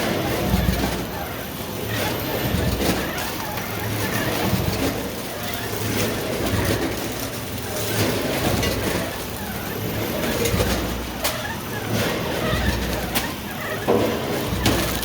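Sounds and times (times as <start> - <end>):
steady machine noise: 13.0 - 15.0.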